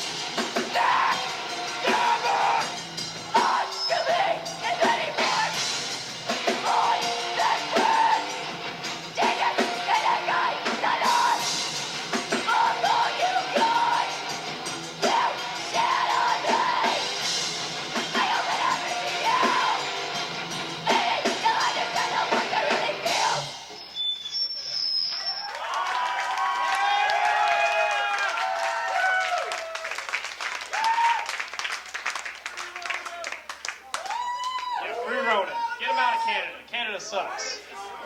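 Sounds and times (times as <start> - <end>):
yelled vocals: 0.0 - 23.5
live heavy rock band: 0.0 - 23.6.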